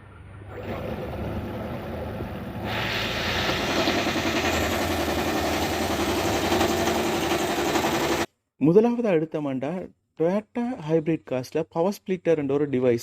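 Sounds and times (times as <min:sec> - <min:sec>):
misfiring engine knocking rattle: 0:03.2 - 0:08.3.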